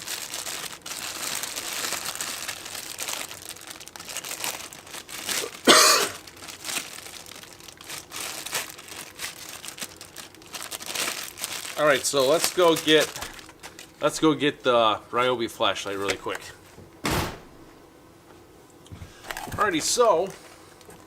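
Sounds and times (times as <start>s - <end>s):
plastic ripping: 0.0s - 14.2s
plastic packaging crinkling: 0.0s - 14.4s, 19.2s - 21.0s.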